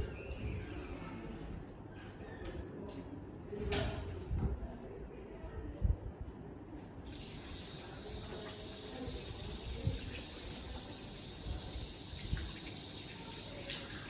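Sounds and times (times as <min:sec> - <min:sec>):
water running from tap: 0:07.0 - 0:14.0.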